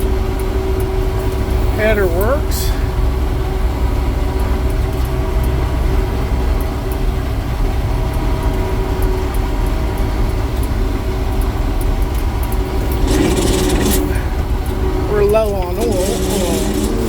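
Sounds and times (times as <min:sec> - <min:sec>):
farm machine engine running: 0:12.2 - 0:17.0.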